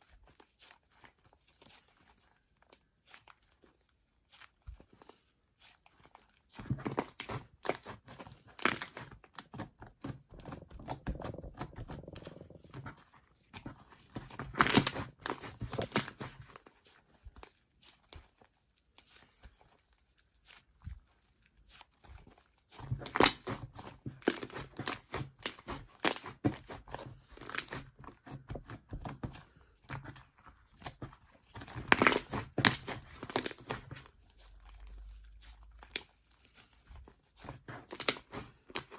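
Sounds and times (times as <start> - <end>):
slime crackling and tearing: 6.8 - 12.9, 14.3 - 16.6, 19.1 - 27.9, 30.7 - 38.9.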